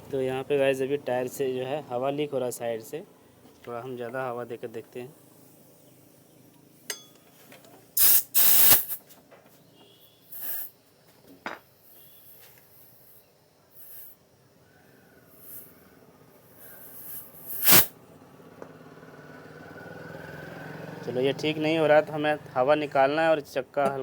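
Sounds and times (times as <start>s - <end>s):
compressed air hissing blasts: 8.0s - 9.1s, 10.3s - 10.8s, 11.8s - 14.2s, 15.3s - 17.9s.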